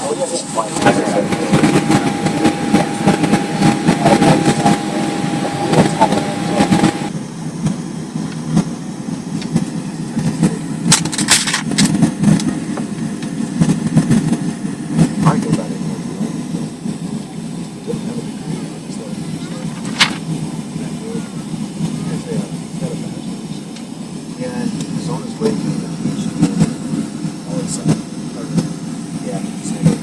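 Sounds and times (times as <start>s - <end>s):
steady tone: 0.0s - 8.2s
aircraft cabin hum: 0.0s - 30.0s.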